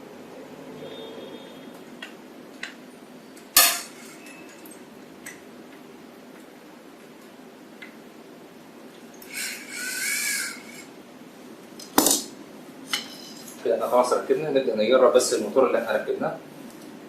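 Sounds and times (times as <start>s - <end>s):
metal parts clattering: 3.6s - 4.4s.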